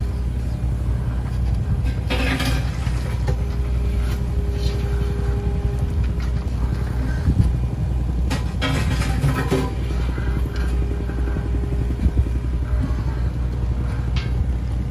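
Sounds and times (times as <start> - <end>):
excavator engine running: 0.0 - 14.9
steady whine: 0.0 - 14.9.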